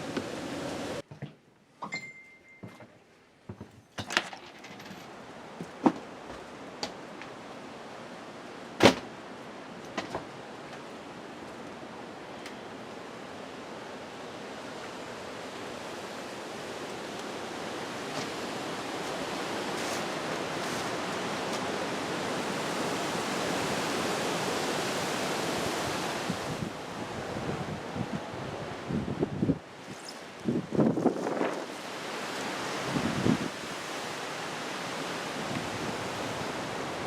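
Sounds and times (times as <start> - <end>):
strong wind gusting: 17.4 - 29.7, 30.4 - 31.7, 32.6 - 33.7.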